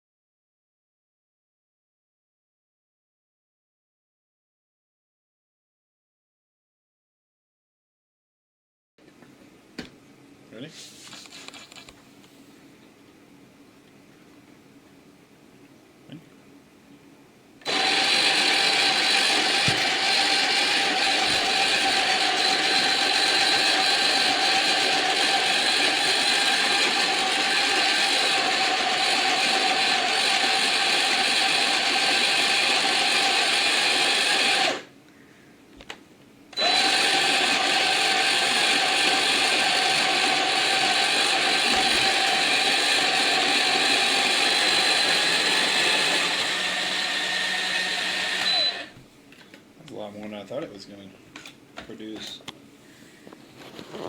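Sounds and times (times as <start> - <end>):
coffee grinder motor whining: 17.6 - 34.9, 36.6 - 49.0.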